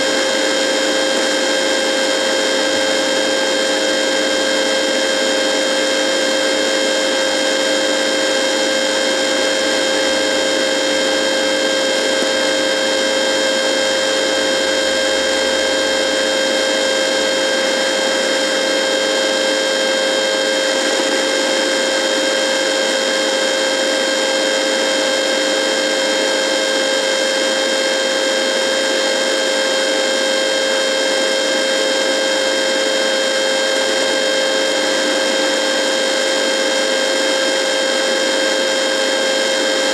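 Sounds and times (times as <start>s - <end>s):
radio electrical buzz: 8.0s - 25.2s.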